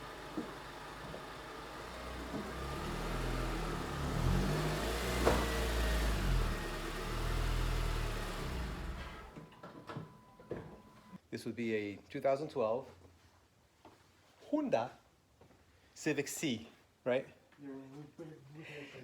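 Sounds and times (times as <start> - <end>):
car engine revving: 0.0 - 9.4.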